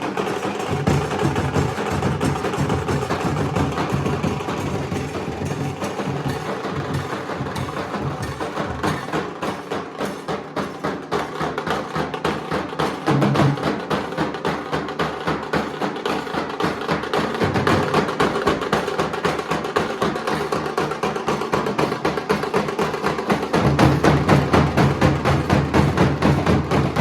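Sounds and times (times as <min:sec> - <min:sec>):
dhol drums beating: 0:00.0 - 0:27.0.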